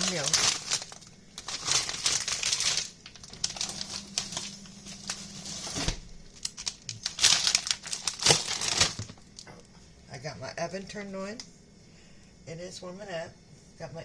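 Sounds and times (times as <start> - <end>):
plastic packaging crinkling: 0.0 - 9.5.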